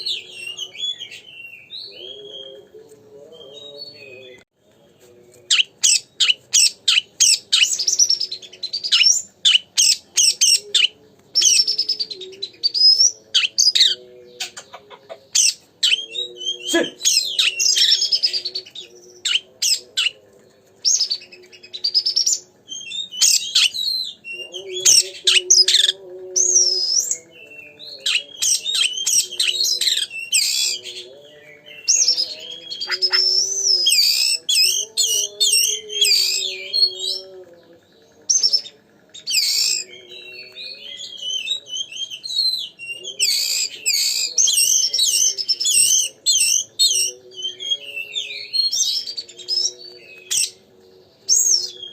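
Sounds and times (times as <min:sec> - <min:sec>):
bird singing whistles and trills: 0:05.5 - 0:14.6, 0:20.8 - 0:51.9.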